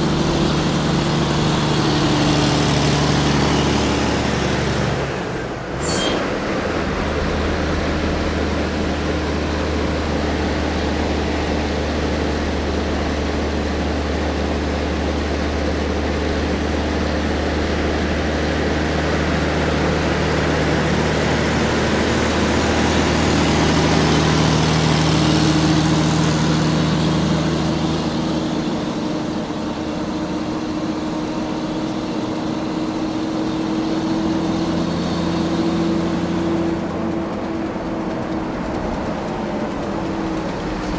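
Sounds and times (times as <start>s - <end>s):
road noise: 0.0s - 40.9s
truck diesel engine droning: 0.0s - 40.9s
thin high whine: 5.6s - 11.0s.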